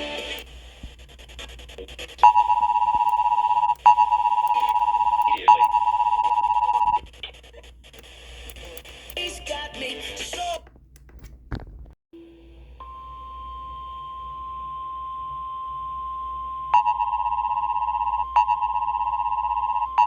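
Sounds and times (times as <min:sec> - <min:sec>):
sharp clicks: 0:00.3 - 0:05.8, 0:07.0 - 0:09.6, 0:10.3 - 0:12.0.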